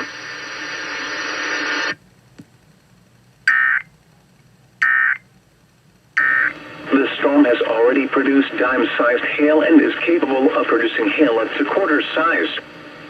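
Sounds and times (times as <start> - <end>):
broadcast hiss: 0.0 - 13.0
warbling data bursts: 3.5 - 3.9, 4.8 - 5.2.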